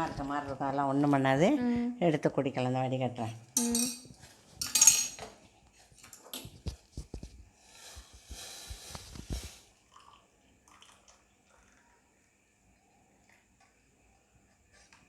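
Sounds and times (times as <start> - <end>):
pan and strainer clinking: 3.6 - 5.3
liquid pouring: 8.2 - 12.2.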